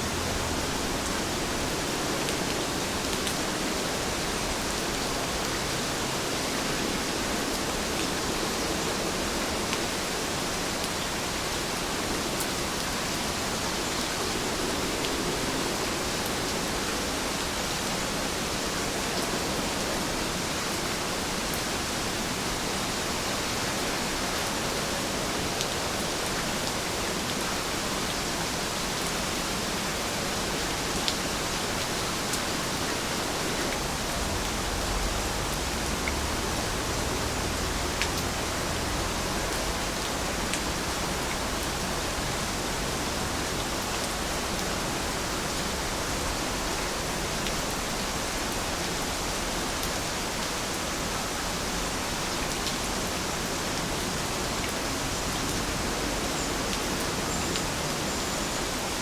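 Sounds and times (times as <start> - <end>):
heavy rain hiss: 0.0 - 59.0
raindrop ticks: 37.9 - 38.4.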